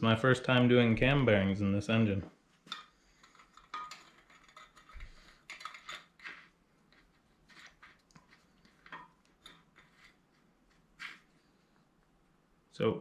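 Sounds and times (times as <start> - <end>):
metal tool parts clinking: 2.7 - 6.3.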